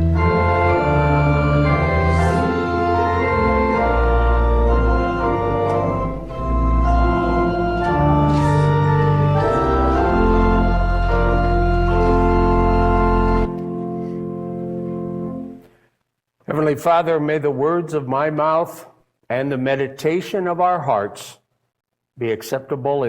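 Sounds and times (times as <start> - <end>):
deep bass pedal notes: 0.0 - 13.4
organ playing chords: 0.0 - 15.8.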